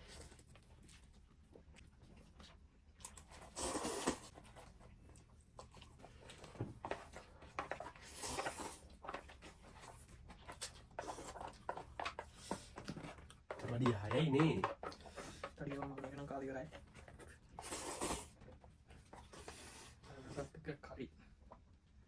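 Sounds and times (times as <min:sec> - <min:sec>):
noodles being slurped: 0:03.0 - 0:18.4.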